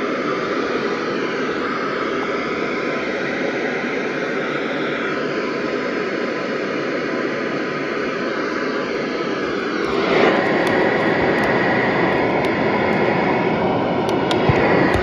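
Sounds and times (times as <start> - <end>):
faint crackles: 9.5 - 13.2
radio static hiss: 9.5 - 15.0.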